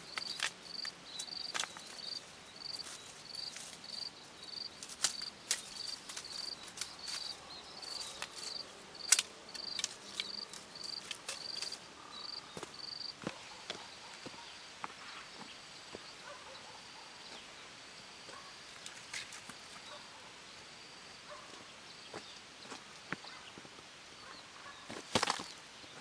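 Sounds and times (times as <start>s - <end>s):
insect chirping: 0.0s - 26.0s.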